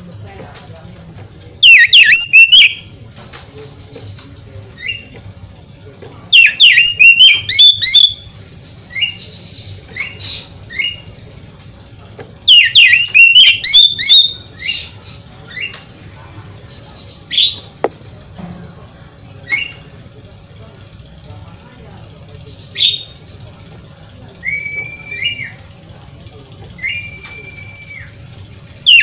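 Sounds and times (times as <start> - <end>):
upswept bird chirps: 1.6 - 2.8, 6.3 - 11.1, 12.5 - 15.8
bird whistled song: 1.6 - 4.2, 4.8 - 5.1, 6.3 - 11.1, 12.5 - 15.8, 16.7 - 17.6, 19.4 - 19.9, 22.3 - 23.4, 24.4 - 25.6, 26.8 - 28.2.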